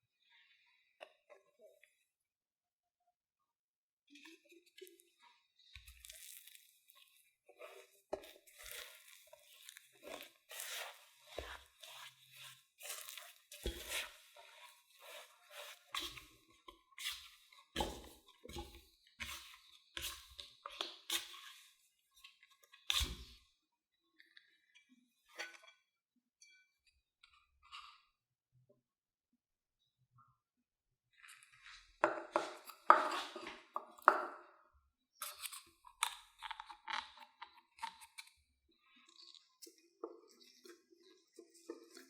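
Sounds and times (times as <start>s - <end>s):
potato mixture crunching and squishing: 4.4s - 23.4s, 35.1s - 42.0s.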